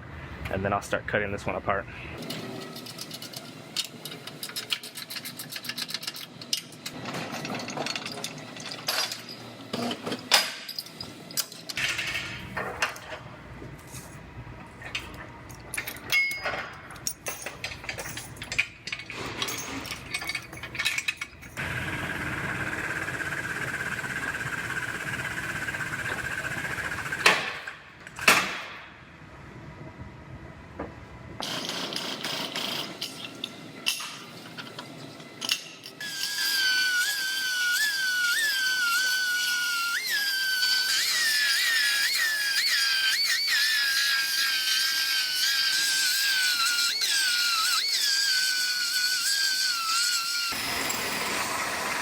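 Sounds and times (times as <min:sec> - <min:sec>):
metal chains clinking and clanking: 0:02.3 - 0:13.1, 0:14.9 - 0:21.6, 0:31.4 - 0:36.0
machine whining: 0:21.4 - 0:27.4.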